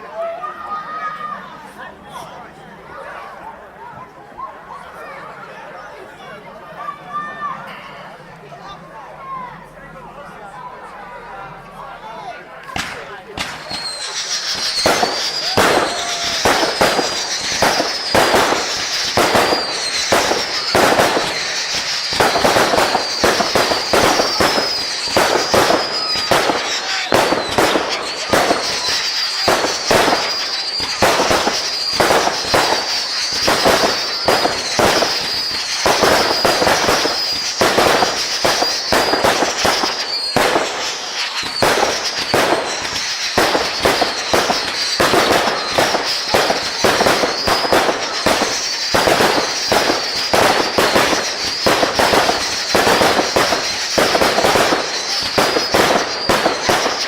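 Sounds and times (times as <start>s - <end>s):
fireworks bangs and crackles: 11.4s - 57.0s
high wavering whistle: 13.6s - 43.0s.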